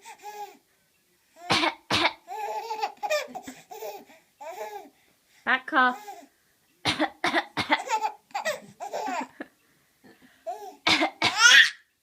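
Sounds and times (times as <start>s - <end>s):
baby laughing: 2.2s - 4.9s, 7.8s - 9.4s
person coughing: 10.9s - 11.6s.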